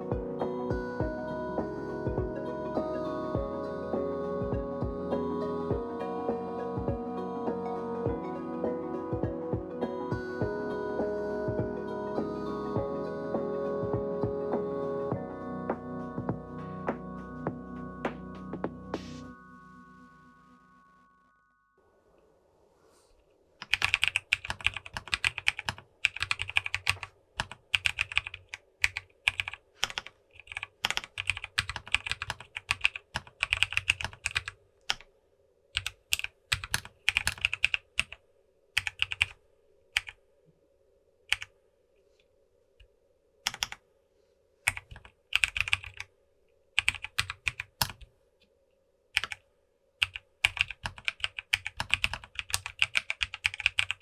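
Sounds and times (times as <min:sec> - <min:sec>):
typing on mechanical keyboard: 0:23.6 - 0:35.0, 0:35.8 - 0:38.2, 0:38.8 - 0:39.4, 0:40.0 - 0:40.2, 0:43.5 - 0:43.8, 0:44.7 - 0:46.1, 0:46.8 - 0:48.0, 0:49.2 - 0:49.4, 0:50.0 - 0:54.0.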